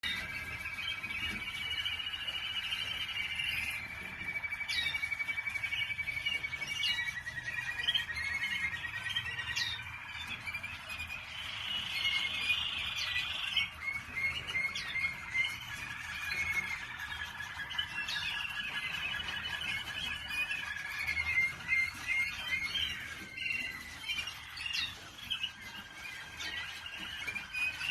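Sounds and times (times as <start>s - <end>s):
canary trilling: 0.0s - 27.9s
sharp bird chirps: 0.0s - 27.9s.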